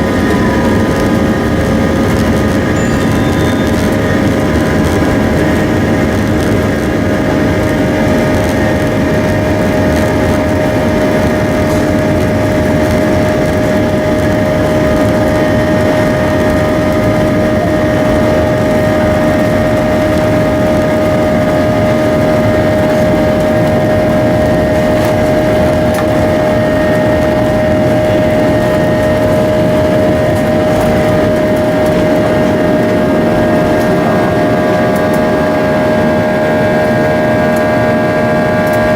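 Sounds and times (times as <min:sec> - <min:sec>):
jet engines rushing and whining: 0:00.0 - 0:38.9.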